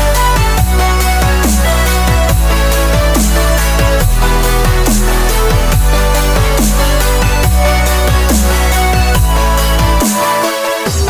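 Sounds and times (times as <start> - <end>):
electronic dance music: 0.0 - 11.0.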